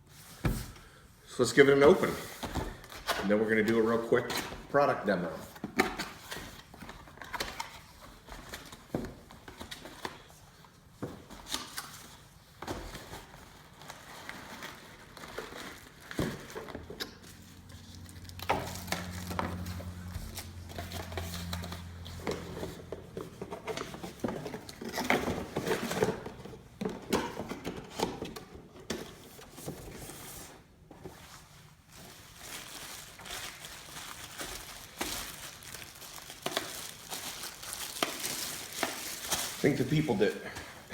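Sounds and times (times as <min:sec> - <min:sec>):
packaging crinkling and tearing: 0:11.4 - 0:26.4, 0:31.8 - 0:40.9.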